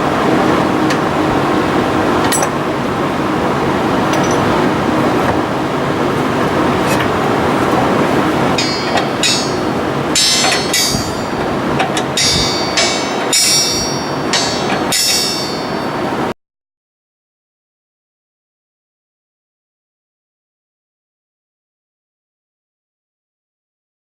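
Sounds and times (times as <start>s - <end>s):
loud steady background noise: 0.0s - 16.4s
tools clanking on metal: 2.2s - 2.7s, 4.1s - 4.6s, 8.6s - 16.0s.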